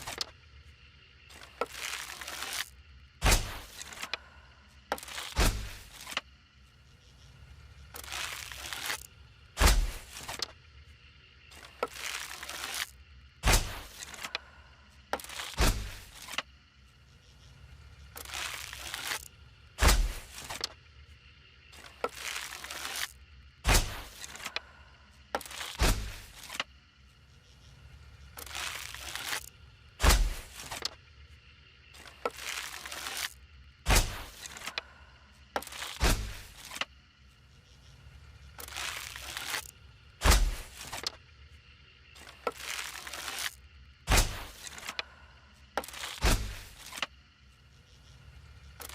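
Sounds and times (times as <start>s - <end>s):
arrow thwack with low thump: 9.6s - 10.0s, 13.4s - 13.9s, 19.8s - 20.2s, 25.8s - 26.2s, 30.0s - 30.4s, 33.9s - 34.3s, 36.0s - 36.5s, 40.2s - 40.7s, 44.1s - 44.5s, 46.2s - 46.6s.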